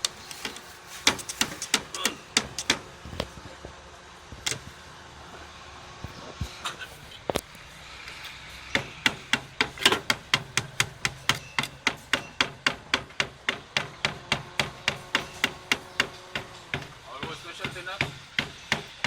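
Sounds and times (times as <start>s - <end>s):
tool knocking on paint container: 8.8s - 19.0s.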